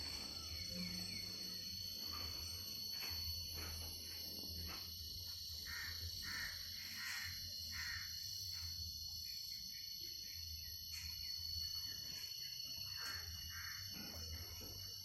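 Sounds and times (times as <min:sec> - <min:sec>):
high-pitched insect drone: 0:00.0 - 0:15.0.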